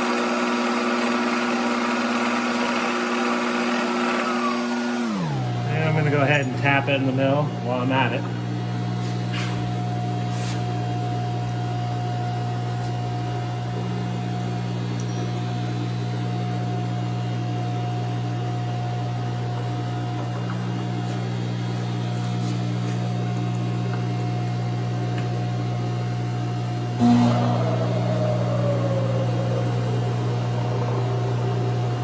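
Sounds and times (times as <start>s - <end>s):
milling machine motor hum: 0.0s - 32.0s.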